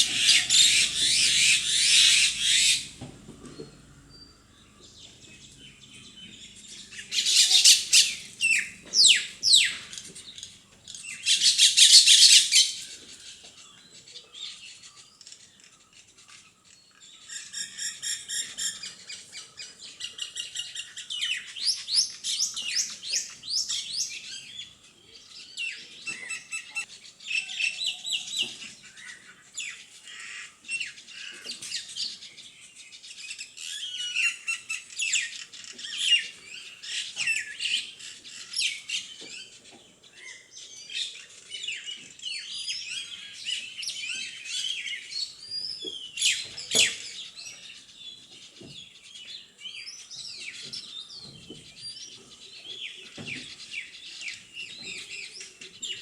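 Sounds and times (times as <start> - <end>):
parrots chattering chirps: 0.0 - 3.0, 6.7 - 9.8
parrots screeching: 0.0 - 3.0, 7.1 - 9.6.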